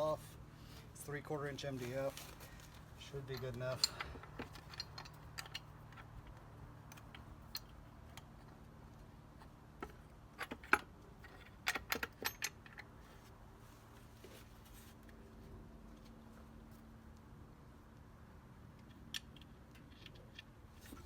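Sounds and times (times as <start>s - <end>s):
metallic clicks of bolt and nut: 3.3s - 8.6s, 9.4s - 12.9s, 18.7s - 21.0s.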